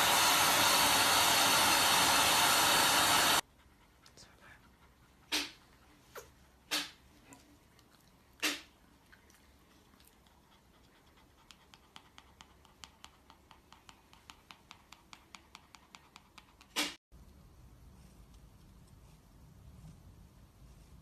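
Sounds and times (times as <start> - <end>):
pet animal breathy puffs: 3.2 - 7.6, 9.6 - 17.0.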